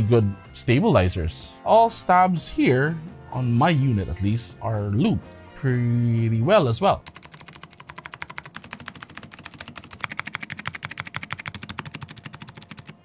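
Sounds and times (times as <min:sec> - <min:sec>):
fast typing on mechanical keyboard: 0:07.0 - 0:13.0.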